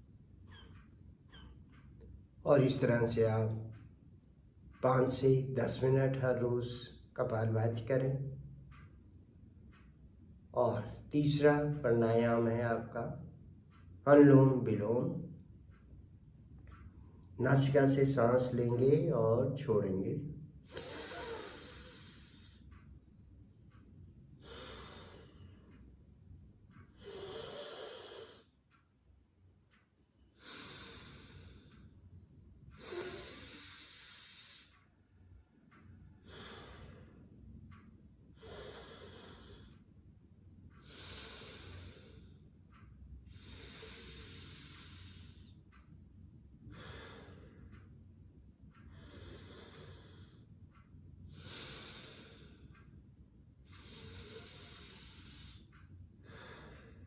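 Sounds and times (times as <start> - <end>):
person breathing through nose: 20.7 - 22.6, 24.4 - 25.5, 30.4 - 31.8, 32.8 - 34.8, 36.2 - 37.2, 38.4 - 39.7, 40.8 - 42.4, 43.3 - 45.5, 46.7 - 47.6, 48.9 - 50.4, 51.3 - 52.7, 53.8 - 57.0.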